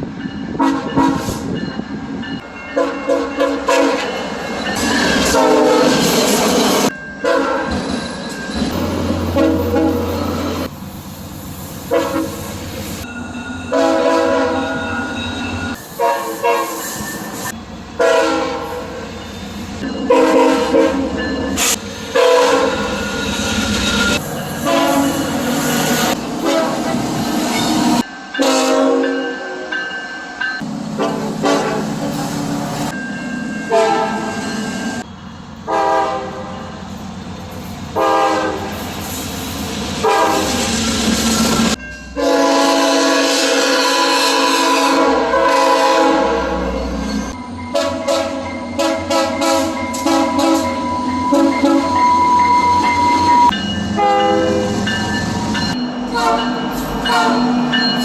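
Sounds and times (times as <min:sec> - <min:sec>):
passing trains rumbling: 0:00.0 - 0:58.0
locomotive horn blasts: 0:00.6 - 0:01.5, 0:02.7 - 0:04.2, 0:05.2 - 0:06.1, 0:07.2 - 0:07.8, 0:09.3 - 0:10.3, 0:11.9 - 0:12.4, 0:13.7 - 0:14.8, 0:16.0 - 0:16.8, 0:18.0 - 0:19.0, 0:20.1 - 0:21.2, 0:22.1 - 0:23.0, 0:24.6 - 0:25.4, 0:26.4 - 0:27.0, 0:28.4 - 0:29.7, 0:31.0 - 0:32.0, 0:33.7 - 0:34.4, 0:35.7 - 0:36.6, 0:38.0 - 0:38.8, 0:40.0 - 0:40.6, 0:42.2 - 0:47.0, 0:47.7 - 0:54.8, 0:56.1 - 0:57.6.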